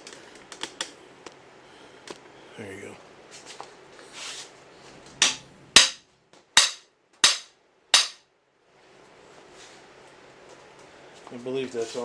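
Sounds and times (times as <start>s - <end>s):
sharp hammer blows on metal tool: 5.2s - 6.0s, 6.6s - 8.2s.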